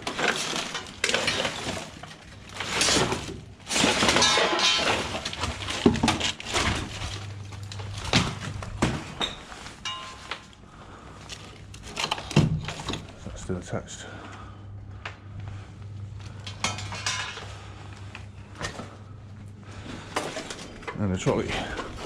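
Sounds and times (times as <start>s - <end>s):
scrap metal clattering: 0.0s - 10.5s, 16.4s - 17.7s.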